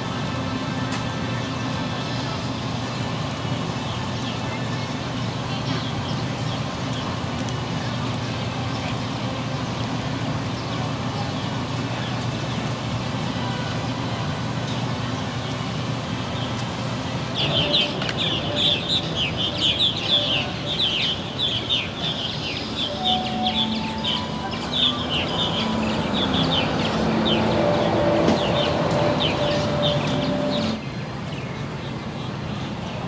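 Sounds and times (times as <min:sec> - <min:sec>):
birds chirping: 0:17.4 - 0:30.8.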